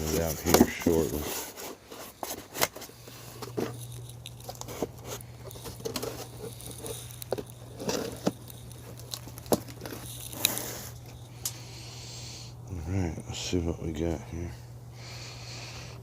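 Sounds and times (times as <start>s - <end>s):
cardboard and styrofoam being handled: 0.0s - 11.1s
low steady hum: 0.0s - 16.0s.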